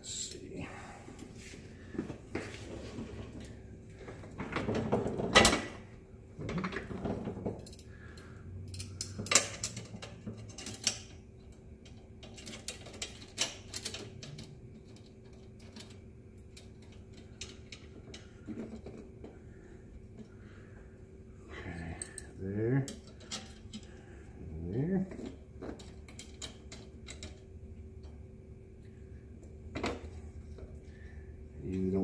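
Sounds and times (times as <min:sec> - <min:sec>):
metallic clicks of springs and screws: 0:08.6 - 0:11.2, 0:12.2 - 0:18.8.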